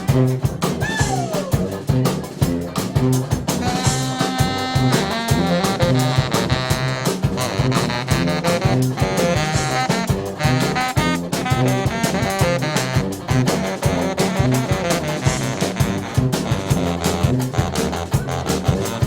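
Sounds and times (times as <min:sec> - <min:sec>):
brass band playing swing tune: 0:00.0 - 0:19.0.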